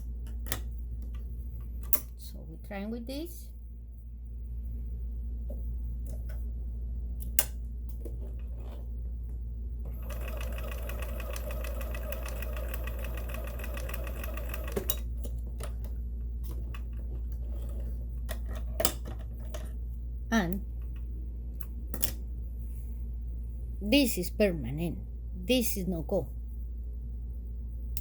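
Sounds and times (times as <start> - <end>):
sewing machine stitching: 9.9 - 15.0
sewing machine clicks: 9.9 - 15.1.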